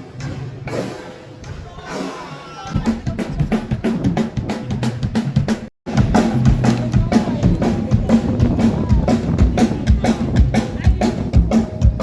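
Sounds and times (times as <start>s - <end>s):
drum kit beat: 0.0s - 12.0s
bass notes: 2.7s - 12.0s.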